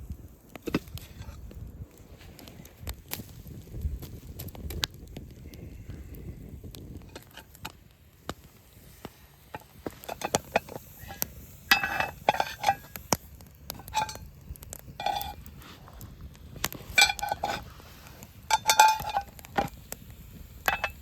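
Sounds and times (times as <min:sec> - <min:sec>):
small crackles and clicks: 0:00.0 - 0:21.0
metal cookware clinking: 0:10.0 - 0:12.9, 0:13.8 - 0:14.3, 0:15.0 - 0:15.4, 0:17.0 - 0:17.6, 0:18.5 - 0:19.7, 0:20.6 - 0:21.0.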